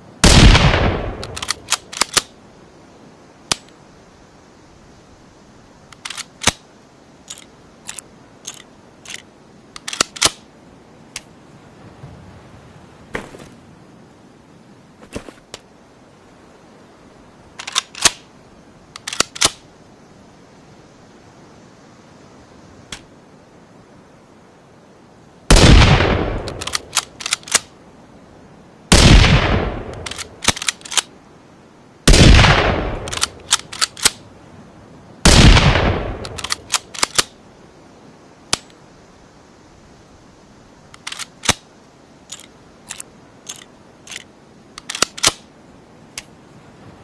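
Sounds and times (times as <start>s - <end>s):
rifle gunshots: 0.2s - 1.7s, 25.5s - 26.7s, 28.9s - 30.6s, 32.1s - 34.2s, 35.2s - 36.7s
sharp mechanical clicks: 1.2s - 2.3s, 7.3s - 10.4s, 19.0s - 19.6s, 26.4s - 27.7s, 29.9s - 31.1s, 33.0s - 34.2s, 36.2s - 37.3s, 41.0s - 41.6s, 42.3s - 45.4s.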